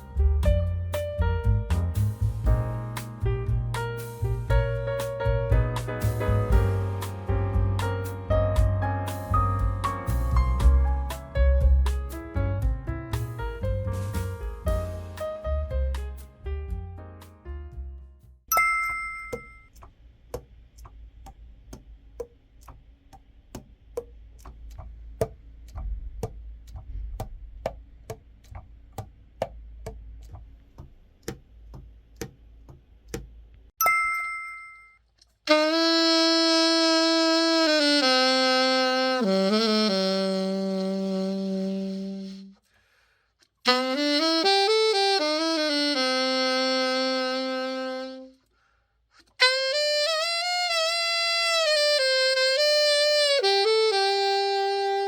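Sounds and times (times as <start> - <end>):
two-tone chime: 18.5 - 19.7, 33.8 - 35.0
alto saxophone long notes: 35.5 - 42.6, 43.6 - 48.5, 49.3 - 55.0.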